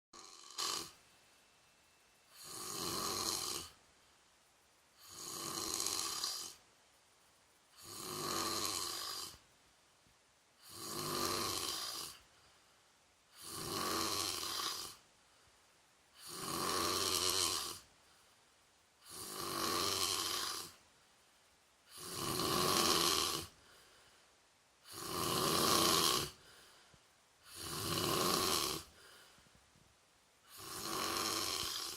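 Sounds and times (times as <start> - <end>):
person snoring: 0.2 - 1.0, 2.3 - 3.8, 5.0 - 6.6, 7.7 - 9.4, 10.6 - 12.2, 13.3 - 15.0, 16.1 - 17.9, 19.0 - 20.8, 21.9 - 23.9, 24.8 - 26.8, 27.4 - 29.4, 30.4 - 31.9.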